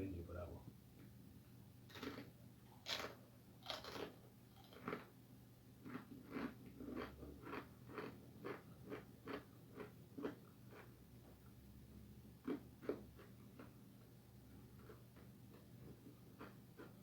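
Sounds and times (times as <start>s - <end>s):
crunchy chip biting: 1.9s - 5.1s
man chewing: 1.9s - 5.2s, 5.8s - 11.0s, 12.4s - 17.0s.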